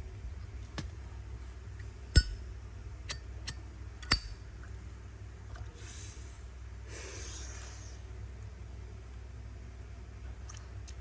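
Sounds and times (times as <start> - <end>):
lighter lid metallic clicks: 2.2 - 2.4, 4.0 - 4.4.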